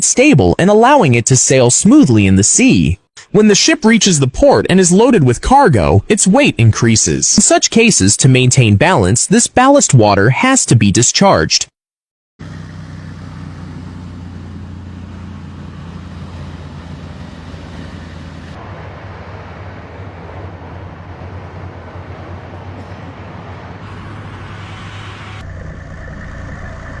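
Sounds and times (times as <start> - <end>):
low engine drone: 12.4 - 27.0
rushing noise: 14.7 - 27.0.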